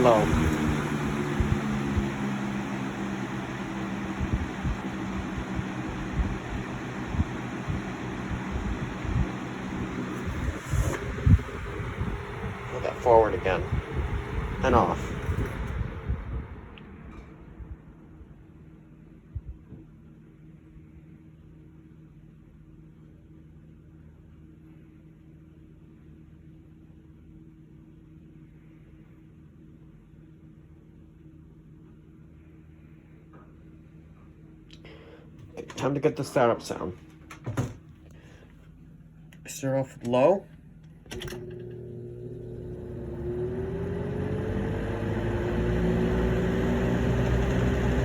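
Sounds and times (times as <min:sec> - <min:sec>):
whoosh of fan air: 0:00.0 - 0:19.8
low hum: 0:00.0 - 0:21.5.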